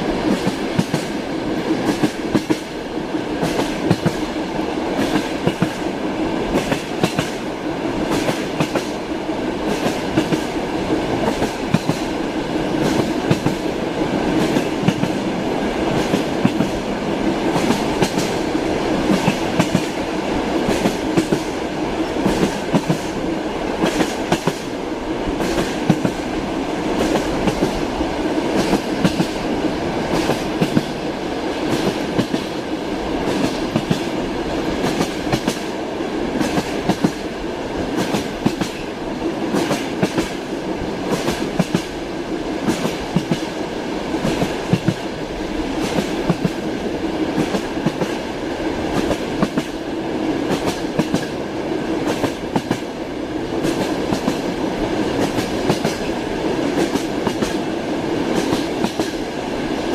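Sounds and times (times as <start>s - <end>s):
train rumbling on rails: 0.0s - 59.9s.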